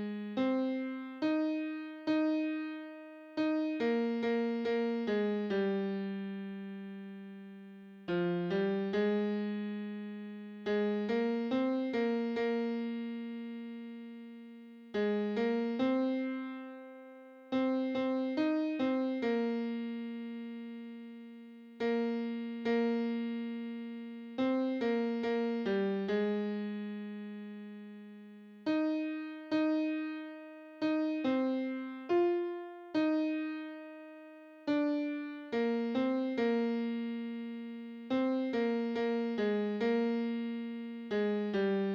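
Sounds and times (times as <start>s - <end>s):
piano melody: 17.5s - 19.7s, 28.7s - 37.0s.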